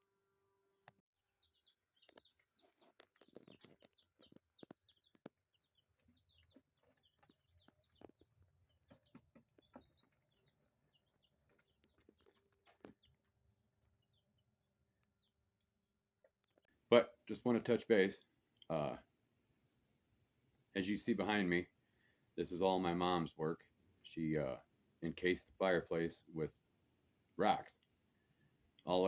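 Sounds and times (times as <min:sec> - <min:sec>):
poultry clucking and chirping: 0:00.7 - 0:15.7.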